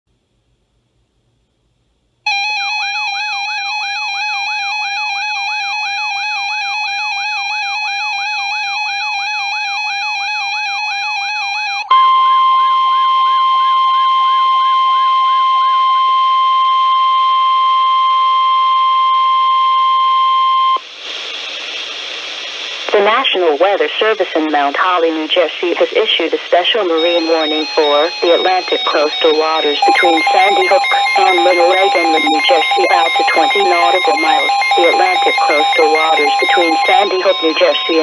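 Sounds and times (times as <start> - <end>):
steady single-pitch alarm tone: 2.3 - 20.8, 26.9 - 38.0
warbling electronic alarm tone: 2.3 - 20.8, 26.9 - 38.0
radio hiss: 20.8 - 38.0.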